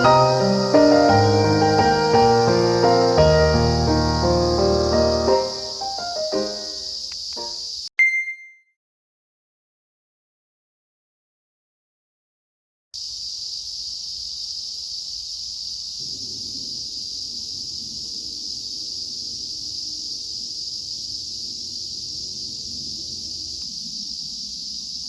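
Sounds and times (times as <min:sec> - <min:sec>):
high-pitched insect chorus: 0:00.0 - 0:07.9, 0:13.0 - 0:25.0.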